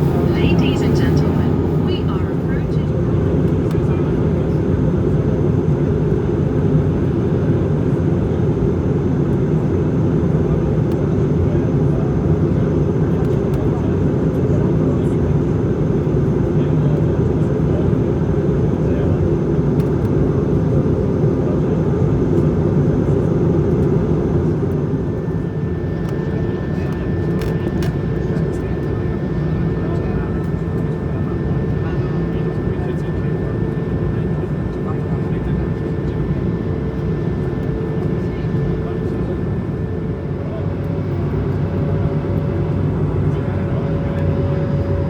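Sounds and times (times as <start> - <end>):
airliner cabin rumble and hiss: 0.0 - 45.0.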